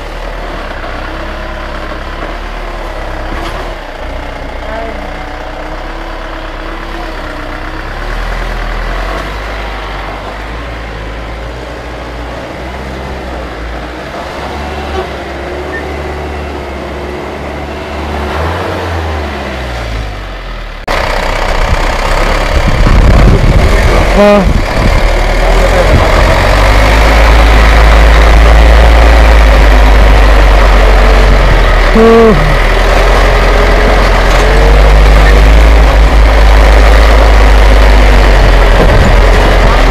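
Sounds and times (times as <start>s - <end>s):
road noise: 0.0s - 39.9s
vehicle engine running: 0.0s - 39.9s.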